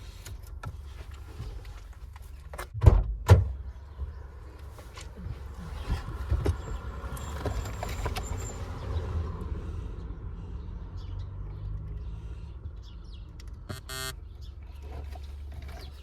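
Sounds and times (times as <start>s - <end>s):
handling clicks and rustling: 4.6s - 8.7s, 14.5s - 16.0s.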